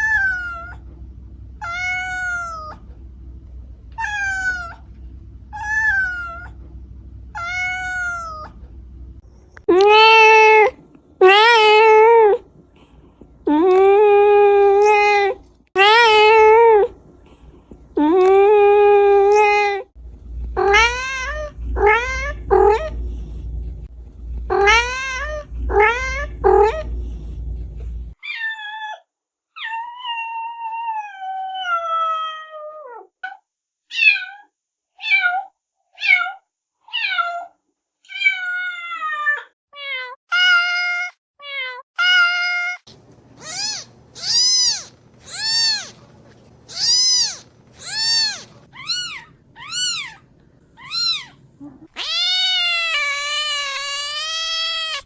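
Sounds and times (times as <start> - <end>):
cats meowing: 1.6 - 2.8, 4.0 - 4.9, 7.4 - 8.6, 20.6 - 23.0, 24.5 - 26.9, 43.4 - 46.1, 46.7 - 55.0.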